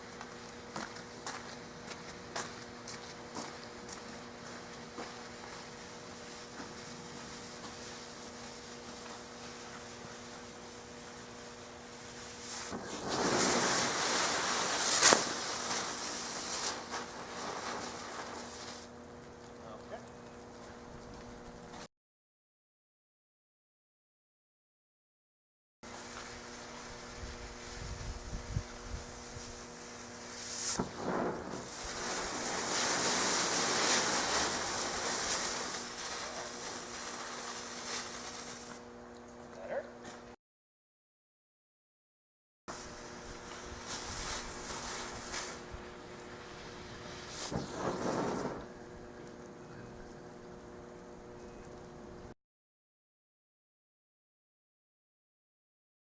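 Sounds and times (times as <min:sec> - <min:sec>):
faint crackles: 0:00.0 - 0:21.9, 0:25.9 - 0:40.2, 0:42.7 - 0:52.3
firework fizzing: 0:04.5 - 0:19.0, 0:25.9 - 0:38.8, 0:42.7 - 0:51.2
sharp pop: 0:14.8 - 0:15.8, 0:30.6 - 0:31.7.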